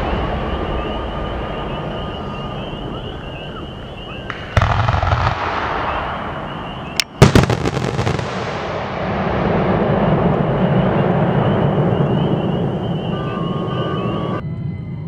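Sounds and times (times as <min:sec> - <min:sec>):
rolling rumble and hiss: 0:00.0 - 0:06.5
firework shells exploding: 0:04.3 - 0:09.7.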